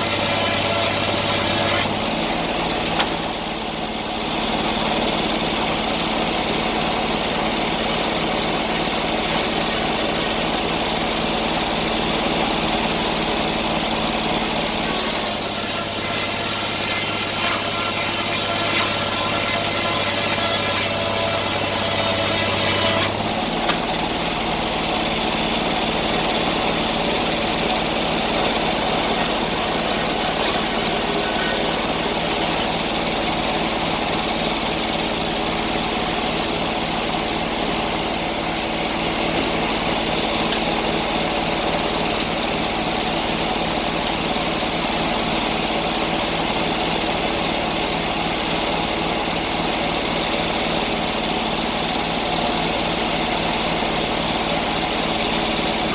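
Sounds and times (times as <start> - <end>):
sawmill engine running: 0.0 - 55.9.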